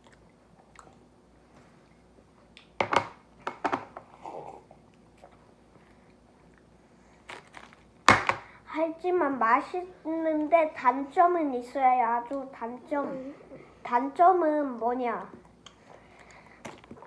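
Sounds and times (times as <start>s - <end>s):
person chewing bread: 0.0s - 1.2s.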